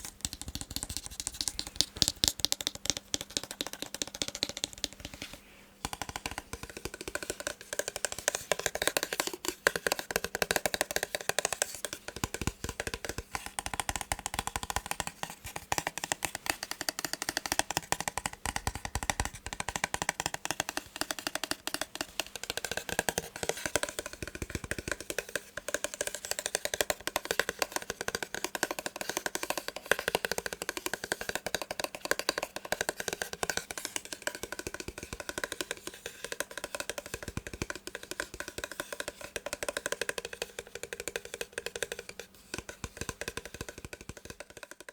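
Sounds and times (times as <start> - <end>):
massage gun tapping: 0.0 - 44.9.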